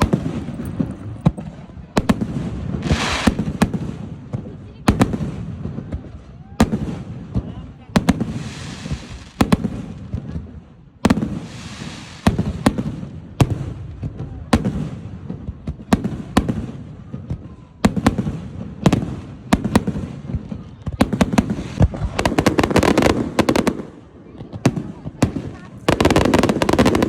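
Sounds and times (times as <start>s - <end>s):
firework shells booming: 0.0s - 27.0s
rapid firework crackling: 0.0s - 27.0s.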